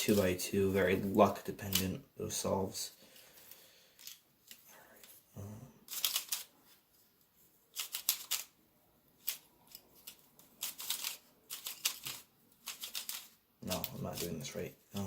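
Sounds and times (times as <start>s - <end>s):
puzzle cube clicking turns: 5.8s - 6.5s, 7.7s - 8.6s, 9.2s - 14.4s.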